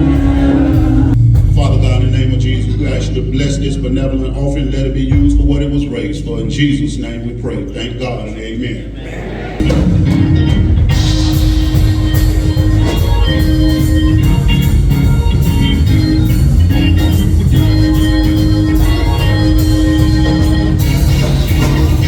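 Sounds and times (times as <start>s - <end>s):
drum kit: 0.0s - 6.6s, 9.6s - 22.0s
bass: 0.0s - 8.4s, 9.6s - 22.0s
organ chords: 0.0s - 22.0s.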